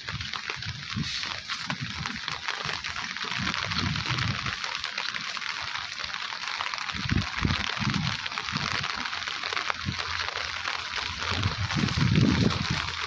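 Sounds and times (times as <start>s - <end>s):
rain falling: 0.0s - 13.0s.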